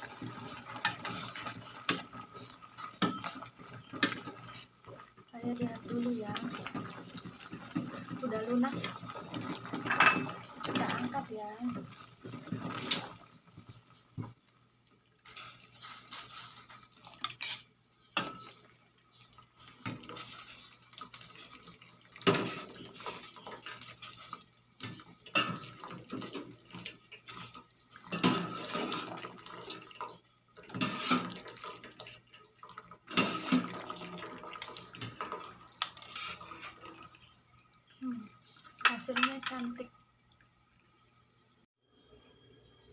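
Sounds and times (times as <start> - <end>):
utensils clattering on metal pot: 0.0 - 13.2, 15.2 - 18.7, 19.6 - 32.4, 33.0 - 37.0, 38.7 - 39.8.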